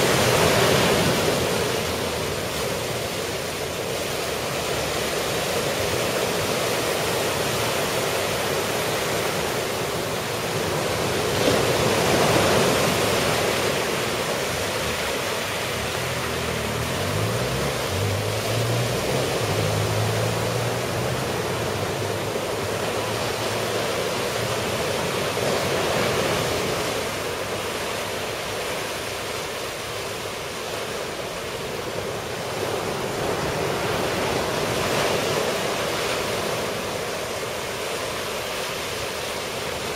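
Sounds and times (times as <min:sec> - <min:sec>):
ocean surf breaking: 0:00.0 - 0:39.9.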